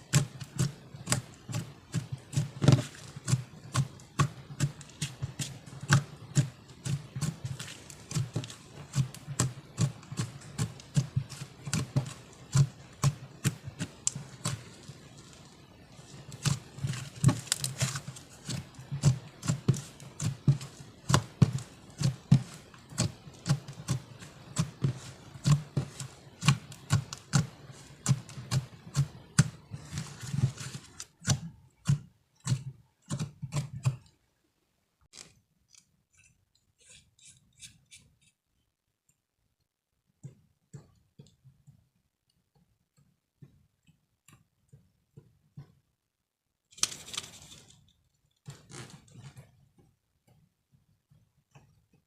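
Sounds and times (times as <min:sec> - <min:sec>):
slime squished by hand: 0:00.1 - 0:34.0.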